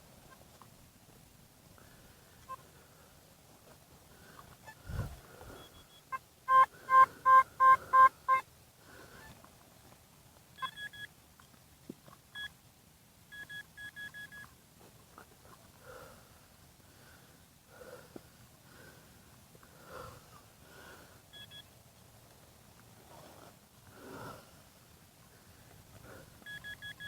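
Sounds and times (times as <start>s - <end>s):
metal detector beeping: 5.5s - 8.4s, 10.6s - 11.1s, 13.3s - 14.5s, 21.4s - 21.7s, 26.4s - 27.0s.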